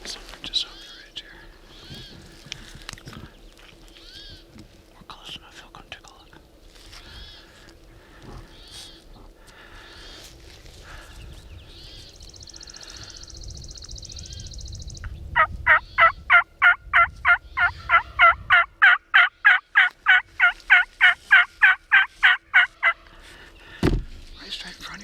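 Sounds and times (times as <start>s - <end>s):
turkey yelps: 15.4s - 23.0s.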